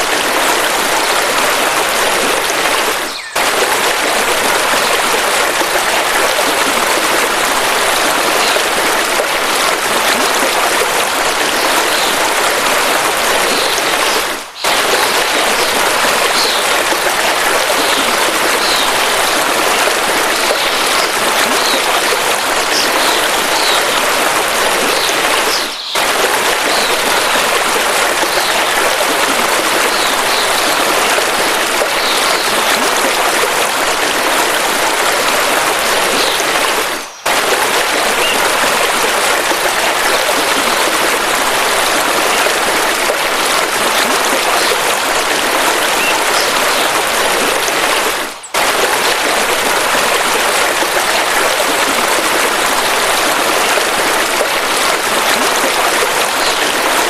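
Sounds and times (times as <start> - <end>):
river water rushing: 0.0 - 57.0
high bird chirps: 3.1 - 3.4.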